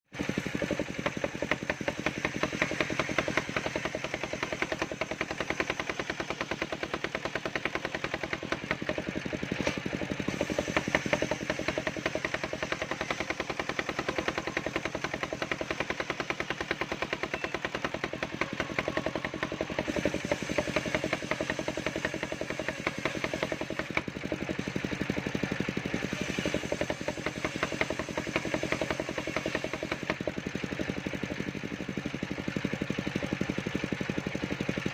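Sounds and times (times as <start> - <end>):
sawmill engine knocking: 0.1 - 34.9.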